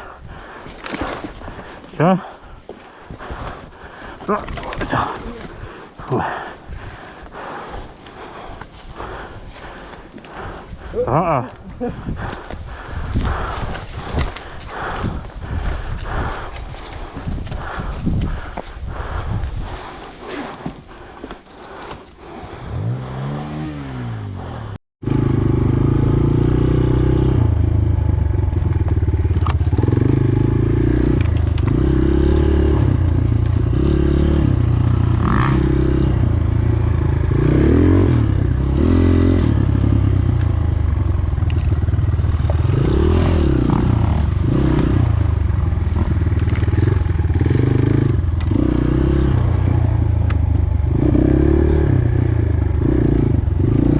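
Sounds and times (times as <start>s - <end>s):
dirt bike engine revving: 22.7s - 53.9s.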